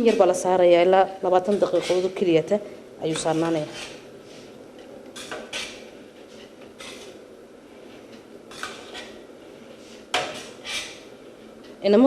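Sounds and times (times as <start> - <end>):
metal pots clinking and scraping: 5.2 - 7.2, 8.0 - 9.2, 10.2 - 11.1.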